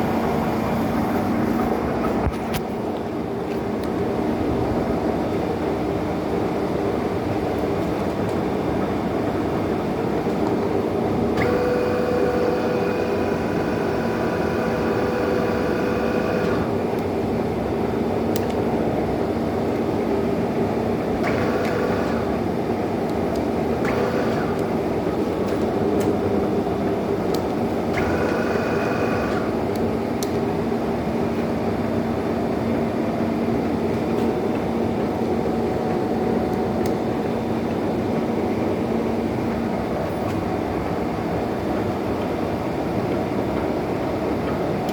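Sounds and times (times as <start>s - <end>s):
lathe mechanical drone: 0.0s - 3.4s, 8.6s - 17.8s, 20.7s - 30.2s
gear whine: 11.4s - 16.7s.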